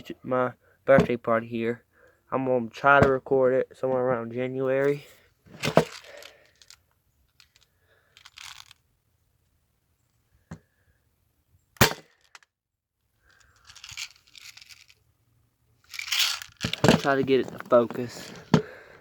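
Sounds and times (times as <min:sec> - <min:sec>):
rustling: 0:04.9 - 0:08.8, 0:13.3 - 0:15.0, 0:15.8 - 0:18.8
bb gun shot: 0:11.8 - 0:12.1.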